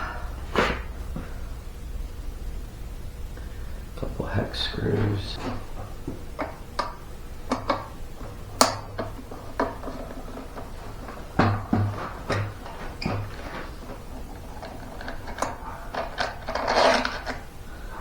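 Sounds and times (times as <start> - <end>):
hand tools clicking: 5.4 - 17.5.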